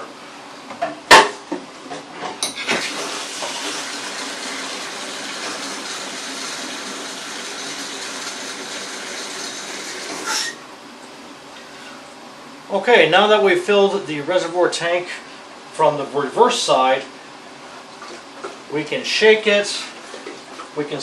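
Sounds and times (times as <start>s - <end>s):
water running into plastic tank: 2.6s - 10.6s, 19.5s - 21.0s.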